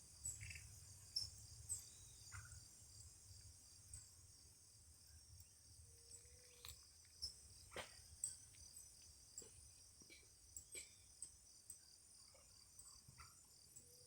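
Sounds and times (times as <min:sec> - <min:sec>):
crickets chirping: 0:00.0 - 0:14.0.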